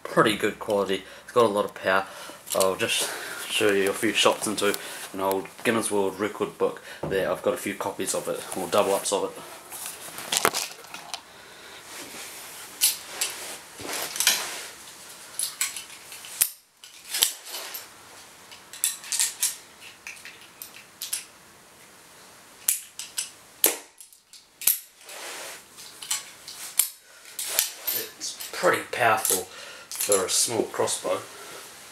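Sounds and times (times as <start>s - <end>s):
handling noise: 2.3s - 6.0s, 7.0s - 21.3s.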